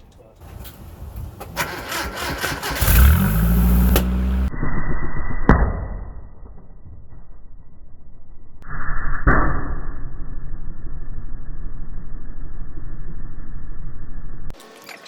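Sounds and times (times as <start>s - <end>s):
truck exhaust rumble: 0.4s - 4.5s
balloon bursting bang: 3.7s - 4.4s.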